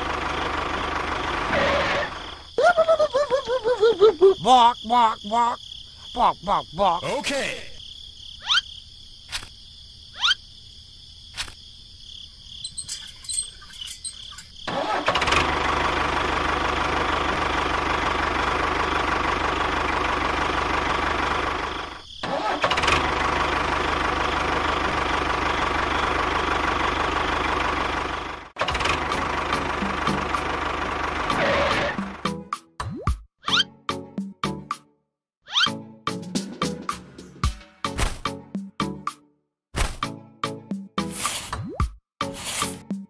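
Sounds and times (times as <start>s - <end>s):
engine running: 0.0s - 2.6s, 12.7s - 32.4s.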